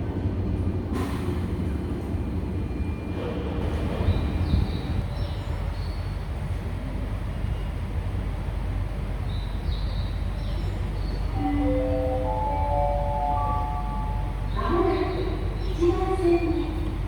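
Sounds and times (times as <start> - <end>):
subway train rumble: 0.0 - 17.0
chiming station melody: 11.4 - 14.6.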